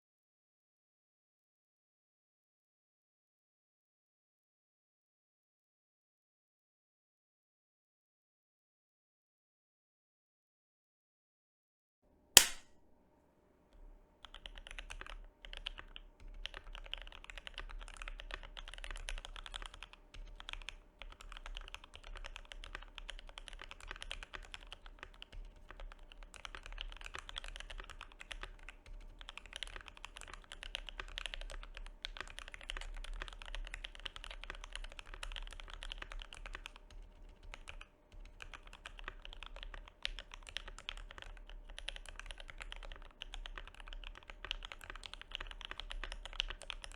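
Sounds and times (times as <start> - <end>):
sharp pop: 12.4 - 12.7
typing on mechanical keyboard: 14.2 - 46.9.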